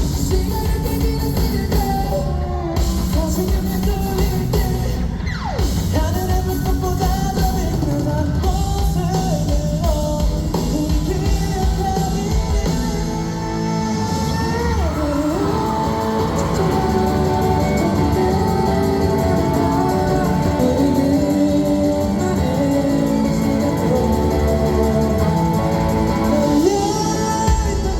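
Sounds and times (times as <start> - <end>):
drum kit: 0.0 - 27.9
electric guitars: 0.0 - 27.9
person singing: 0.0 - 27.9.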